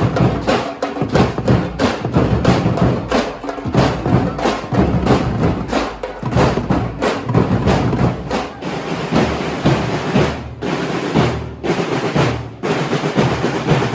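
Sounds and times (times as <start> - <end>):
sharp percussion hits: 0.0 - 13.9
steady low bass: 1.7 - 8.4.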